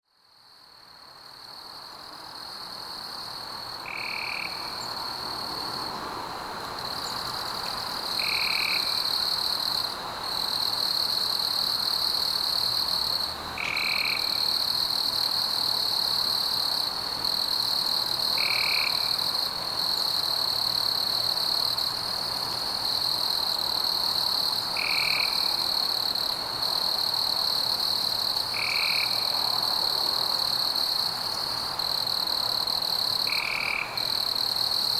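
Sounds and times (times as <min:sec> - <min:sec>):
frog chorus: 0:03.8 - 0:05.0, 0:08.2 - 0:09.4, 0:13.1 - 0:14.7, 0:18.3 - 0:20.1, 0:24.7 - 0:26.4, 0:27.3 - 0:30.9, 0:32.7 - 0:34.3.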